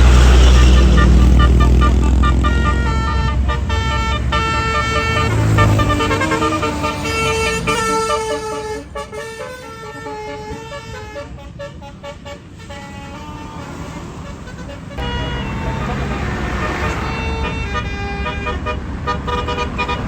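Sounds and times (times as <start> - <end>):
bus engine rumble: 0.0 - 20.0
multi-tone bus horn tune: 0.0 - 20.0.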